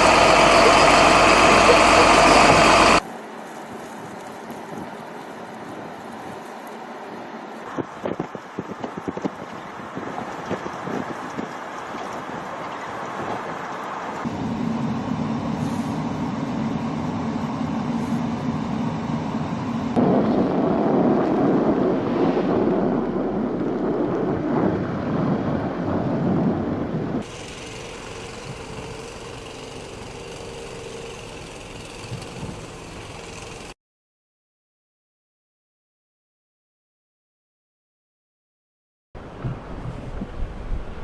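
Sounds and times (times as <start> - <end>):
road traffic: 0.0 - 20.0, 21.0 - 33.8
blizzard wind: 0.0 - 33.7.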